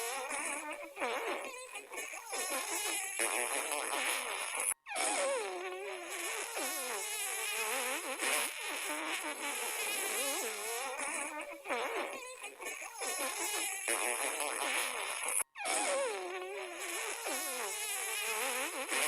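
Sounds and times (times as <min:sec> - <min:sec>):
cartoonish fart sound effects: 0:00.0 - 0:19.0.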